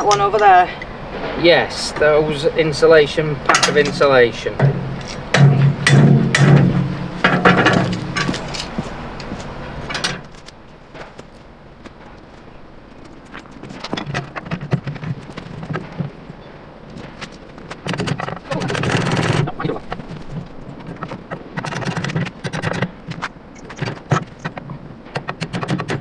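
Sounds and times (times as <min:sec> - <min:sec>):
harsh noise: 0:00.0 - 0:11.2
hand tools knocking on metal: 0:03.4 - 0:11.2.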